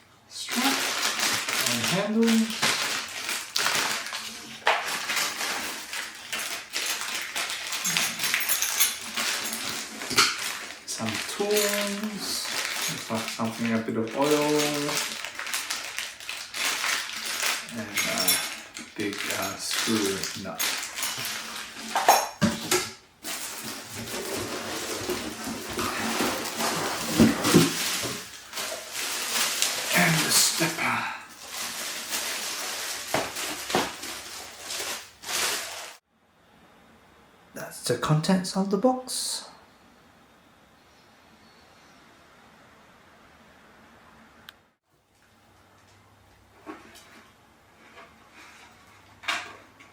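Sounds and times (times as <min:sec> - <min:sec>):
packaging rustling: 0:00.4 - 0:36.0
metal parts clinking and knocking: 0:06.3 - 0:10.5.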